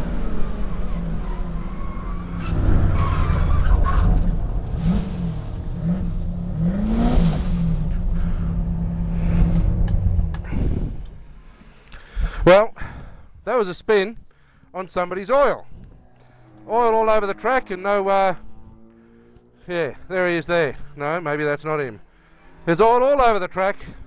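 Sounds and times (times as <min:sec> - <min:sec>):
car engine under racing load: 0:00.0 - 0:11.9, 0:15.7 - 0:21.2.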